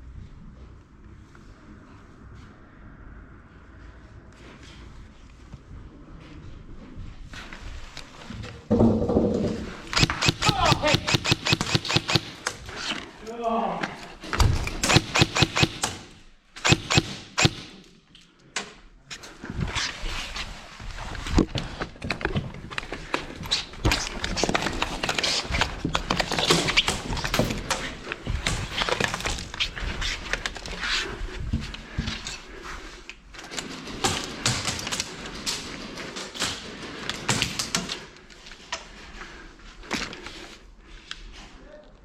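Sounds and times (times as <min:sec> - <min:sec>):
gear knocking: 0:09.9 - 0:12.4, 0:14.8 - 0:15.9, 0:16.6 - 0:17.6
airsoft gun shots: 0:09.9 - 0:12.5, 0:14.8 - 0:17.8.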